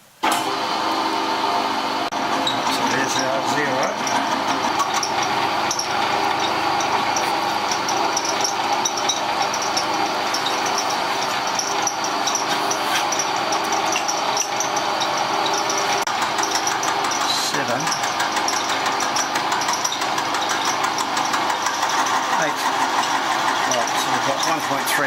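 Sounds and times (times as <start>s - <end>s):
milling machine running: 0.2s - 25.0s.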